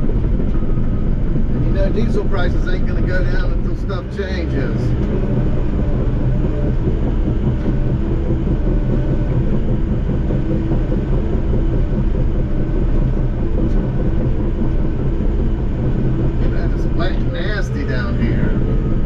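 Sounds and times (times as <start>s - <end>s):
diesel engine rumbling under load: 0.0s - 19.0s.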